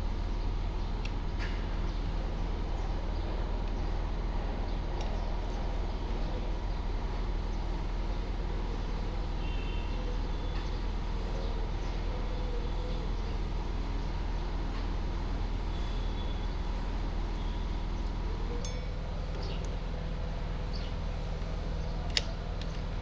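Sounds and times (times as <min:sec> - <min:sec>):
low rumble of road noise: 0:00.0 - 0:23.0.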